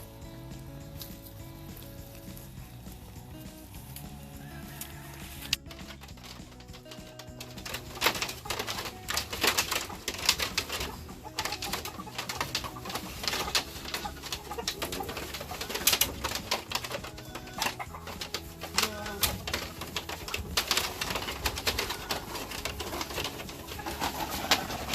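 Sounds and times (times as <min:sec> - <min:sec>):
chicks peeping: 0:00.0 - 0:24.9
hen clucking: 0:03.8 - 0:24.9.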